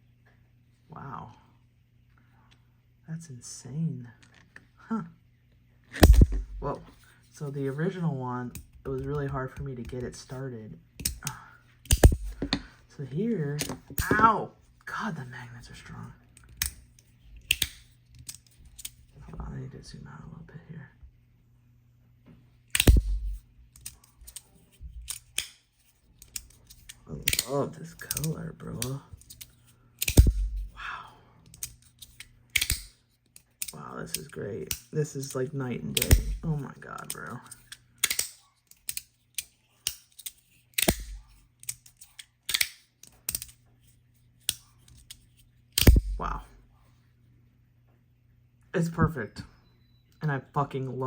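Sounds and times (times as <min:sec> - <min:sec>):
magnetic slider loud snap: 0:06.0 - 0:06.6, 0:22.8 - 0:23.4, 0:30.0 - 0:30.7, 0:40.8 - 0:41.2, 0:45.8 - 0:46.2
magnetic plates snapping clicks: 0:17.5 - 0:18.9, 0:22.8 - 0:24.4, 0:32.6 - 0:32.9, 0:38.0 - 0:39.0, 0:40.8 - 0:41.8, 0:42.5 - 0:43.5, 0:45.8 - 0:46.1
magnetic fidget slider clicking: 0:31.5 - 0:33.0.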